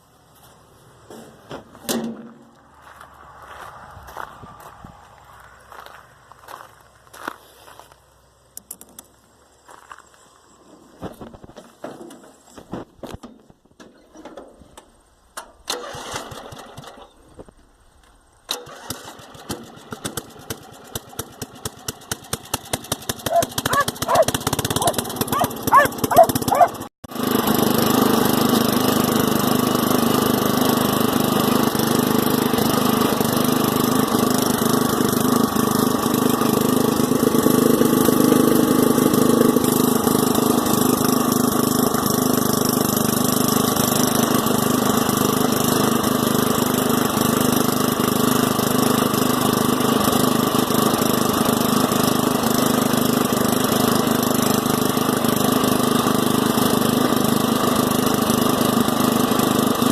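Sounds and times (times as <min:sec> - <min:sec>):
lawn tractor engine running: 0:15.7 - 0:17.2, 0:18.5 - 0:59.9.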